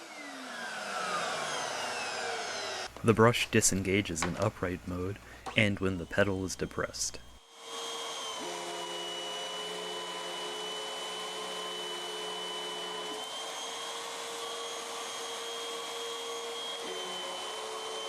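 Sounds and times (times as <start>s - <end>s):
vacuum cleaner whining: 0.0s - 3.0s, 7.4s - 18.0s.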